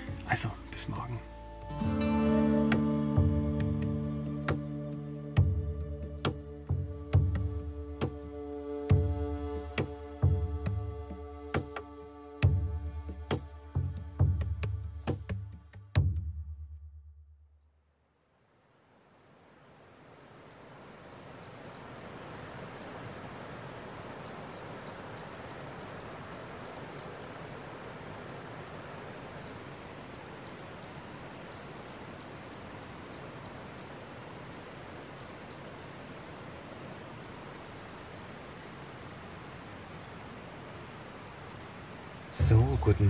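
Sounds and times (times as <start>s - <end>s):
steady forest rushing noise: 0.0s - 15.3s, 18.0s - 43.0s.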